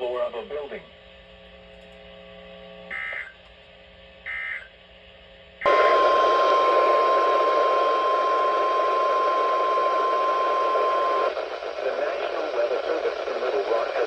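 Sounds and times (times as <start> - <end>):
steady warning alarm tone: 2.9 - 3.4, 4.3 - 4.7, 5.6 - 11.3
radio static: 5.7 - 14.0.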